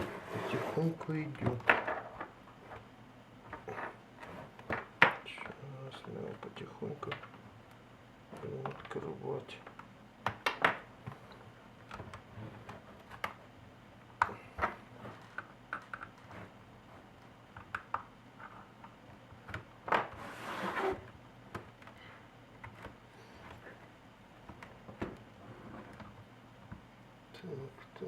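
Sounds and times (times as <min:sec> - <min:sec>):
plastic scraping rasp: 0:20.1 - 0:21.1.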